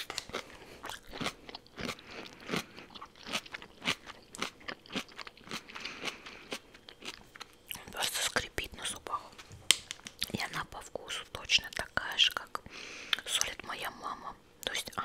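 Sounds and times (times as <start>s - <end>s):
crunchy chewing: 0.0s - 8.4s.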